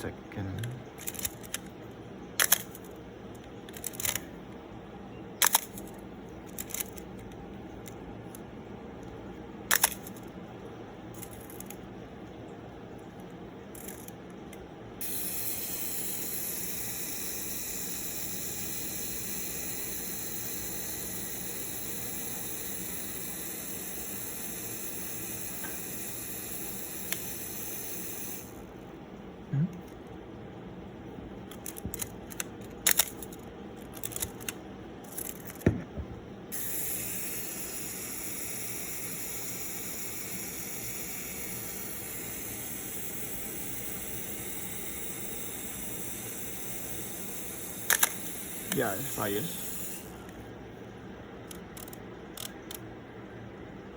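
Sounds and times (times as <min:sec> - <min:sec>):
camera shutter clicks: 0:05.4 - 0:05.9, 0:09.7 - 0:10.2, 0:47.8 - 0:48.8
steady hiss: 0:15.0 - 0:28.7, 0:36.5 - 0:50.4.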